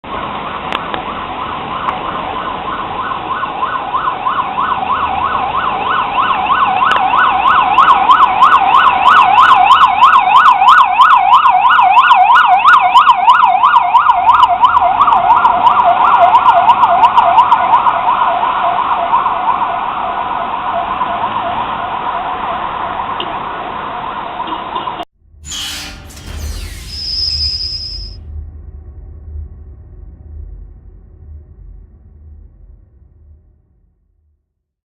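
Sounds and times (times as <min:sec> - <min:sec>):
ambulance siren yelping: 0:01.0 - 0:23.2.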